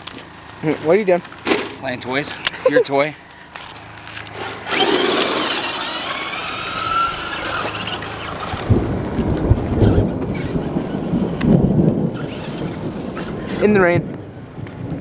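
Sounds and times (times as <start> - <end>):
electric motor whining: 4.0 - 11.2
wind rumbling on microphone: 5.9 - 15.0.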